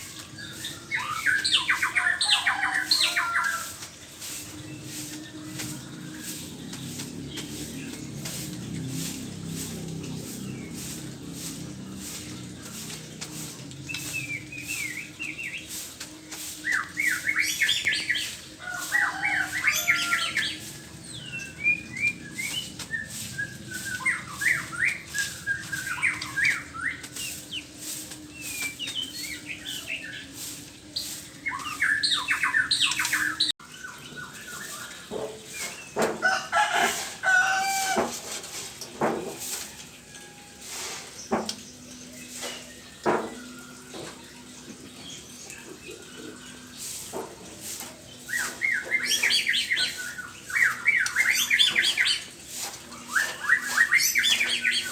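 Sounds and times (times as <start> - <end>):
bird singing whistled notes: 53.0 - 54.9.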